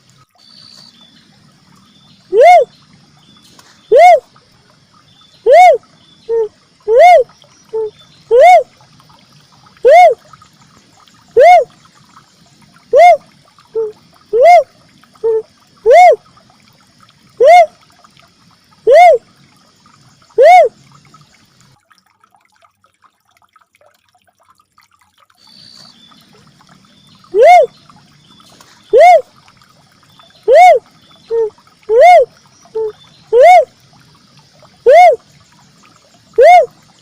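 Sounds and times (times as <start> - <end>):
dove hollow calling: 2.3 - 2.7, 3.6 - 4.2, 5.4 - 8.7, 9.8 - 10.2, 11.4 - 11.8, 12.9 - 16.2, 17.4 - 17.7, 18.8 - 19.2, 20.4 - 20.8, 27.3 - 27.8, 28.4 - 29.3, 30.3 - 33.7, 34.8 - 35.2, 36.3 - 36.7.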